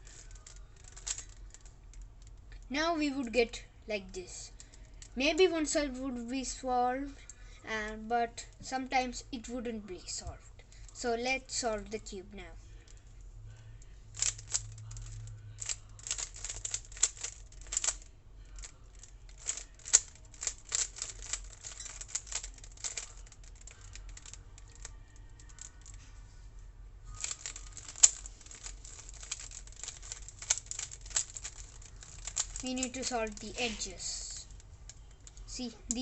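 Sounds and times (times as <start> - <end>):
puzzle cube clicking: 0.1 - 1.7, 14.2 - 26.0, 27.2 - 36.0.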